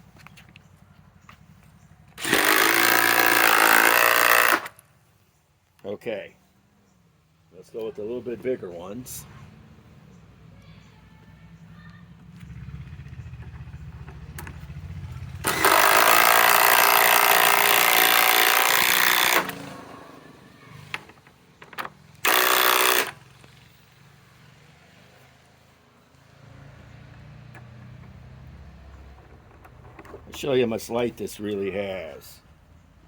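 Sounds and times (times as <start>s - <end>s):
impact driver hammering into wood: 2.2s - 4.7s, 15.4s - 20.0s, 22.2s - 23.2s.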